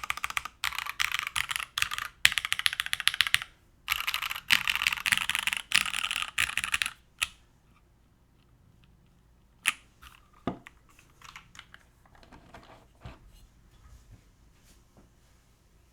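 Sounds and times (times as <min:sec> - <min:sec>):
fast keyboard typing: 0:00.0 - 0:07.3.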